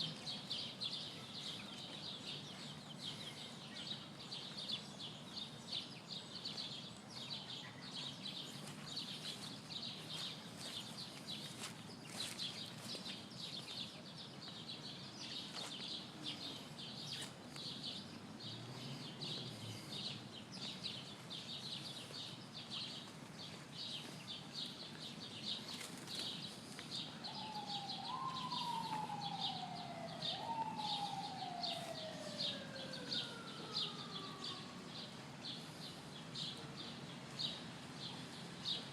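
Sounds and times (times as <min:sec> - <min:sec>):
distant wailing siren tone: 0:26.6 - 0:37.0.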